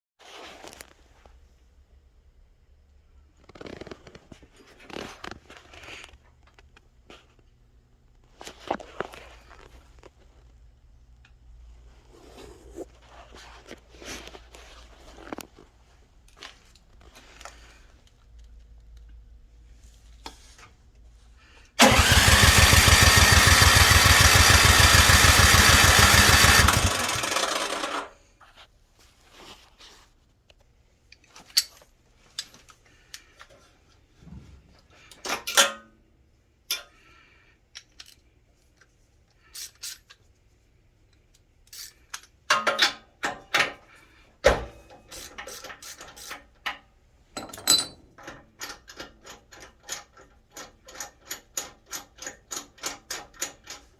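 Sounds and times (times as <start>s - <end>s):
snowblower engine turning over: 21.8s - 28.1s.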